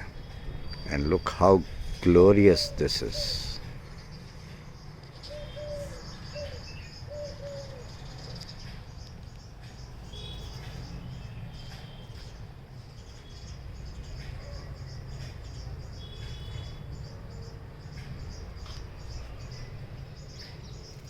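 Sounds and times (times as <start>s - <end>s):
faint bird chirps: 2.6s - 21.0s
dove cooing: 5.2s - 8.2s
high-pitched insect trill: 9.5s - 21.0s.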